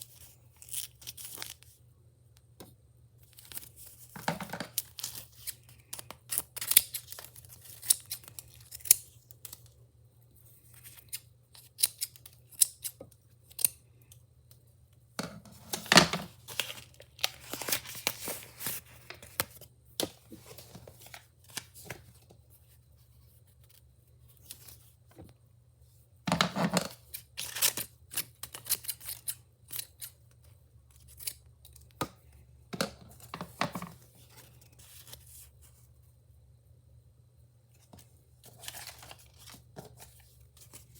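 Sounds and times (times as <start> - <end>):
packaging tearing and rustling: 15.6 - 19.6.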